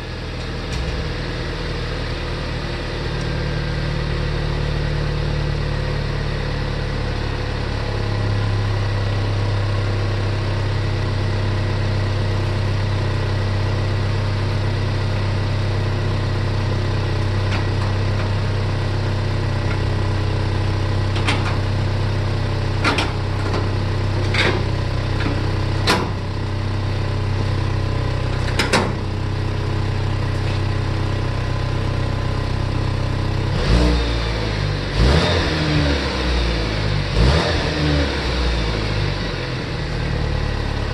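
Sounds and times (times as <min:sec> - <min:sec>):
car engine idling: 0:00.0 - 0:40.9
car engine revving: 0:33.4 - 0:40.9.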